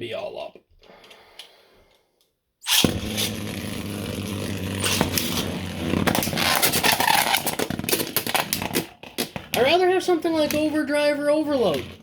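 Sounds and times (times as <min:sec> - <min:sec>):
spinning tops launched with a rip: 0:02.6 - 0:08.6.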